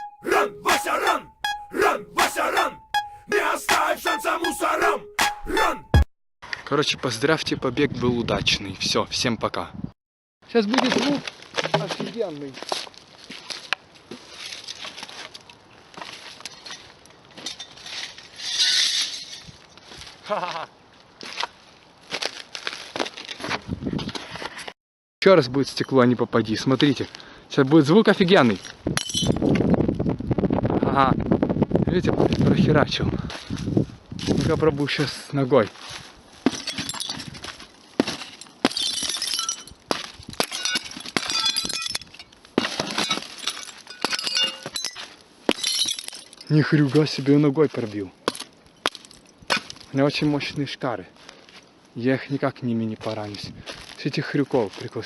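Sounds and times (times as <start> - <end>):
glass shards tinkling: 17.4 - 19.6, 29.0 - 29.4, 36.5 - 37.4, 38.2 - 39.8, 40.4 - 46.6
glass shattering crashes: 36.5 - 37.3, 38.1 - 39.8, 40.4 - 46.5
glass pane smashing: 38.0 - 46.5.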